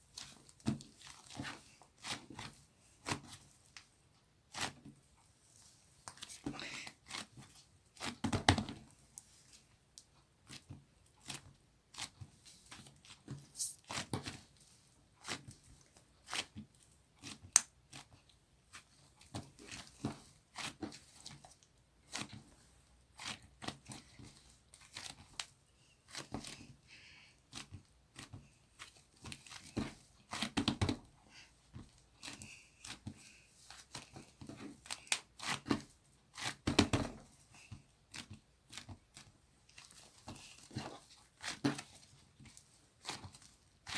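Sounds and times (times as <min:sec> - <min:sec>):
clay tearing and crackling: 0:06.0 - 0:08.2, 0:15.2 - 0:26.8, 0:31.7 - 0:43.9.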